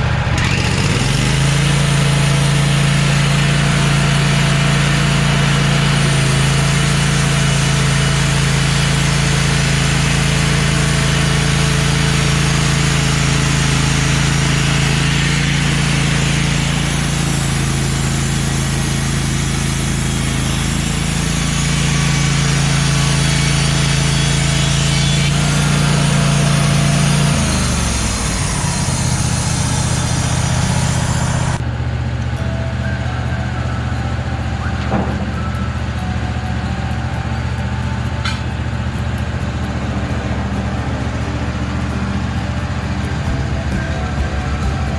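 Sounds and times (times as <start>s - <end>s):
band sawmill engine running: 0.0s - 44.9s
high saw hiss: 0.6s - 31.6s.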